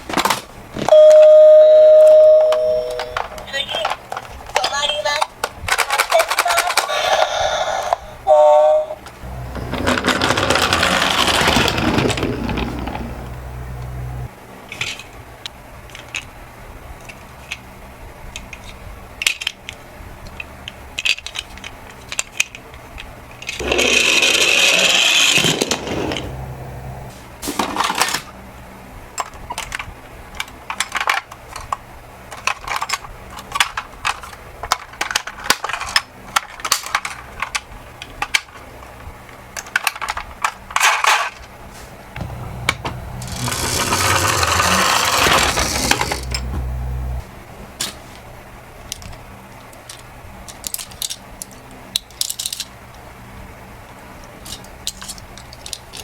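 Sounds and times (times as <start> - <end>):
toy cars clicking and clinking: 2.1 - 7.6, 9.2 - 13.8, 15.9 - 16.3, 18.3 - 26.3, 29.2 - 38.6, 39.5 - 41.5, 43.2 - 46.5, 48.9 - 52.8, 54.3 - 56.0
dense rolling rattle: 9.2 - 14.3, 23.6 - 28.2, 42.2 - 47.2.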